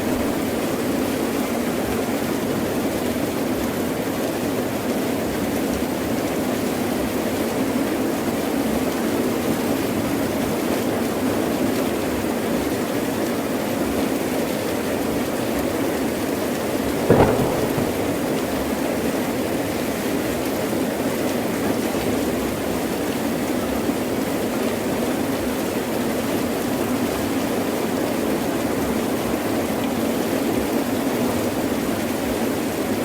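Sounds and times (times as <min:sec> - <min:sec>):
heavy rain: 0:17.1 - 0:18.6
thunder crack: 0:17.1 - 0:18.8.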